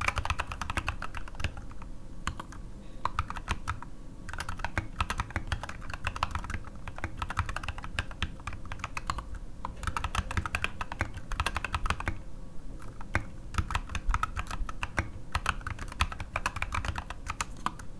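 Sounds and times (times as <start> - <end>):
mechanical keyboard key clacks: 3.1 - 12.2.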